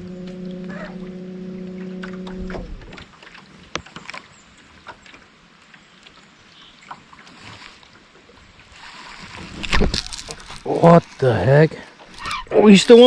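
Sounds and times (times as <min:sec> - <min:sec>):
electric trolling motor humming: 0:00.0 - 0:03.1.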